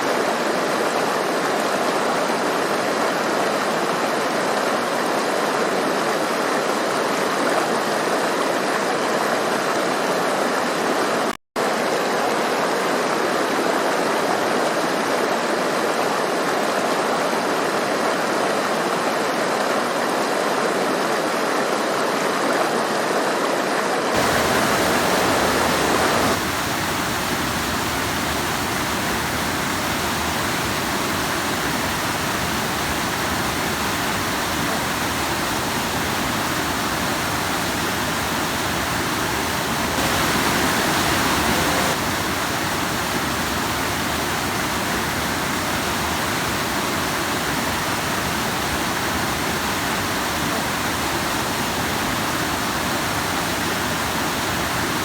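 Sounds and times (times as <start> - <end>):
stream splashing over rocks: 24.2 - 55.0.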